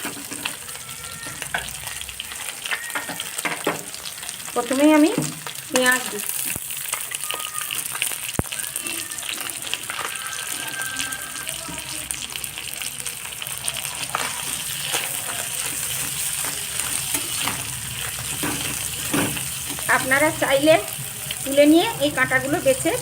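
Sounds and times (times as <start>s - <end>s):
onion sizzling in oil: 0.0s - 23.0s
spatula knocking pan: 2.7s - 3.9s, 14.2s - 20.8s.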